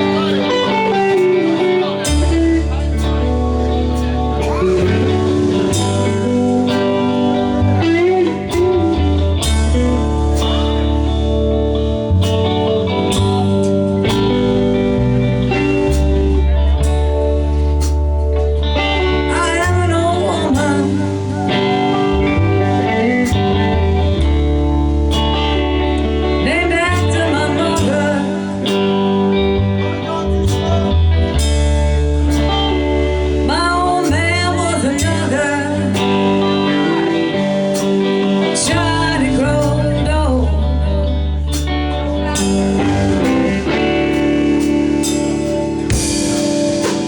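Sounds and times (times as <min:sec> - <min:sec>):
steady drum beat: 0:00.0 - 0:18.3, 0:42.3 - 0:47.0
lead guitar bent notes: 0:00.0 - 0:47.0
sustained bass: 0:00.0 - 0:47.0.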